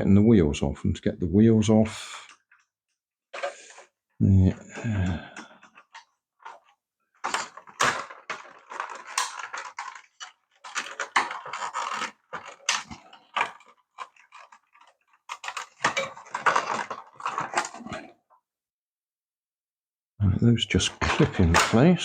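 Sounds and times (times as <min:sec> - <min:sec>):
plastic toy wheels clicking and rattling: 0:05.6 - 0:18.1.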